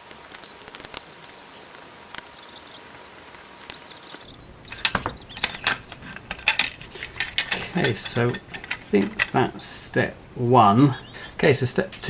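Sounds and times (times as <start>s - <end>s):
faint high chirps: 0.0s - 4.2s.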